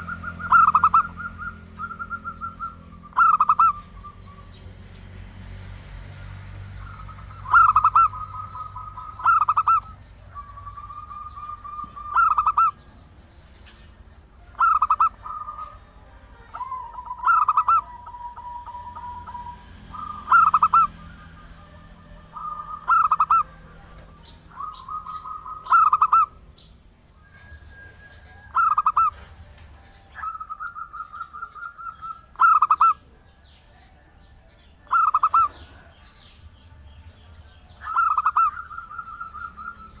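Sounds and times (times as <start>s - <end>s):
dove cooing: 0.0s - 4.2s, 6.8s - 12.9s, 14.5s - 26.4s, 27.2s - 29.6s, 30.2s - 33.2s, 34.8s - 36.2s, 37.8s - 40.0s.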